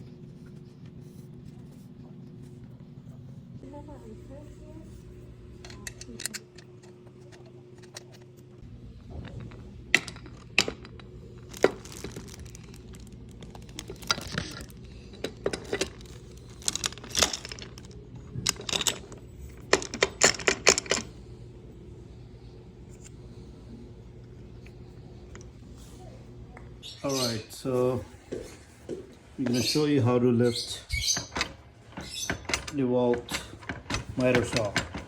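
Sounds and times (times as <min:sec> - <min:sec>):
low steady hum: 0:00.0 - 0:35.0
hard parts clicking and clinking: 0:05.5 - 0:21.1, 0:31.0 - 0:35.0.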